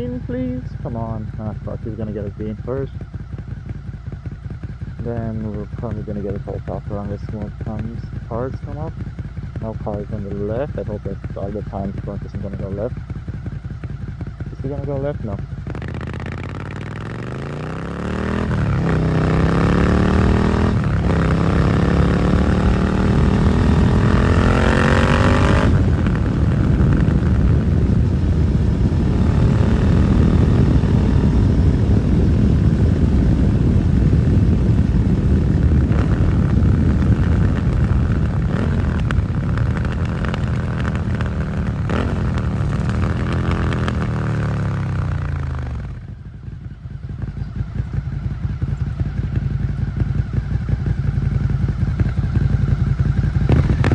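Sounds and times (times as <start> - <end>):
motorcycle engine accelerating: 0.0 - 53.9
wind noise: 14.4 - 50.6, 51.2 - 53.9.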